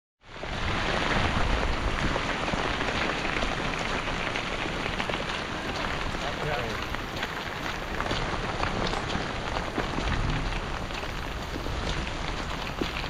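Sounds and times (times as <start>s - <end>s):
steady rain falling: 0.2s - 13.0s
low rumble: 7.9s - 13.0s.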